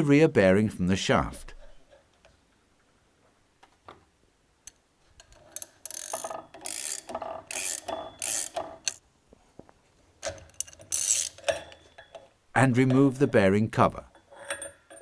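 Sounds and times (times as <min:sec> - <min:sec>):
metal hand tool clicking and rasping: 0:05.3 - 0:09.0, 0:10.2 - 0:12.1.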